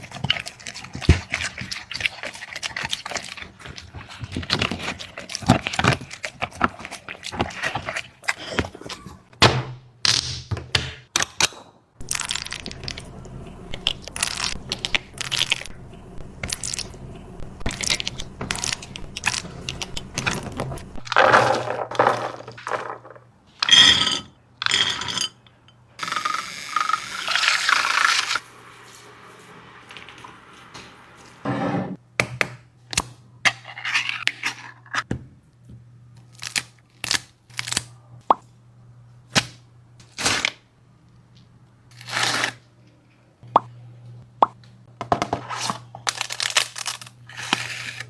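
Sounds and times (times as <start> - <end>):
bowl scraping and clinking: 21.1 - 25.8.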